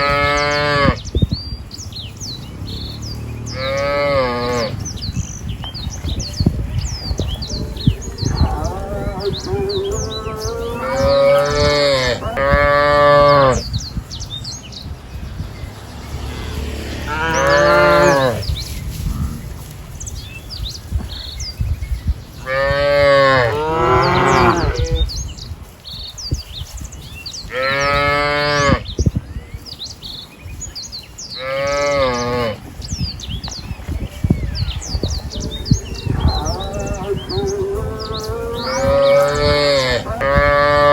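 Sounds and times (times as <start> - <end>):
small birds chirping: 0.0 - 40.9
cattle mooing: 3.5 - 4.8, 7.5 - 13.6, 16.3 - 18.5, 22.4 - 25.0, 35.9 - 40.9.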